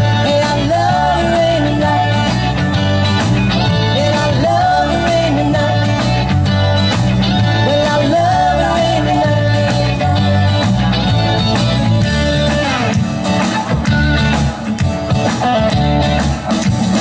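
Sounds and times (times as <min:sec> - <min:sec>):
bass: 0:00.0 - 0:17.0
drums: 0:00.0 - 0:17.0
lead guitar: 0:00.0 - 0:17.0.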